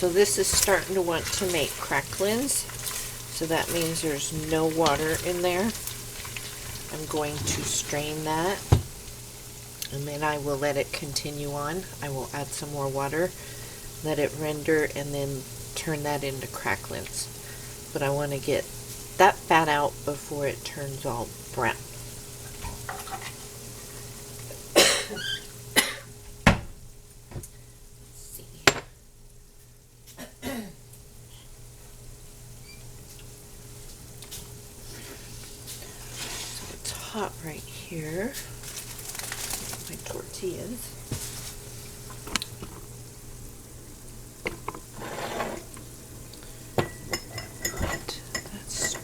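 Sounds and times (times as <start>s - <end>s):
pots and utensils clattering: 0.0s - 9.1s, 22.6s - 23.4s, 44.4s - 49.0s
faint steady hum: 0.0s - 49.0s
fat sizzling in a pot: 0.0s - 49.0s
kitchen utensils clinking: 22.6s - 23.4s, 44.5s - 45.9s, 46.7s - 49.0s.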